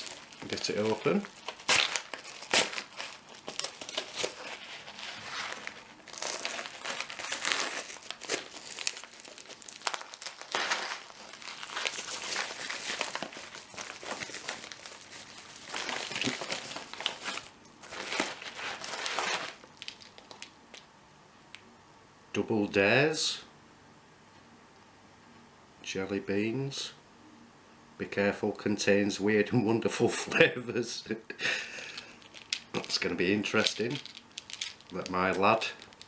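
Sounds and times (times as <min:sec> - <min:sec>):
package wrapping crinkling: 0:00.0 - 0:20.9, 0:31.7 - 0:36.0.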